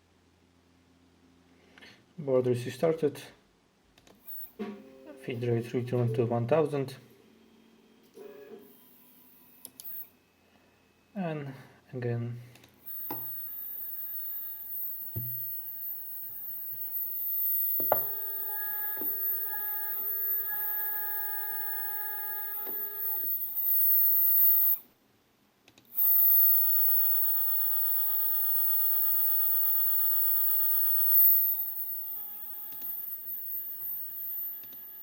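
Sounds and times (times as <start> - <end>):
stepper motor whining: 12.9 - 24.8, 26.0 - 35.0.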